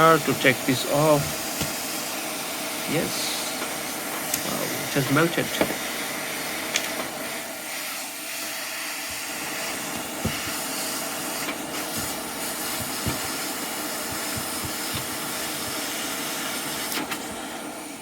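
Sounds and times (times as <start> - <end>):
hot air hissing: 0.0 - 18.0.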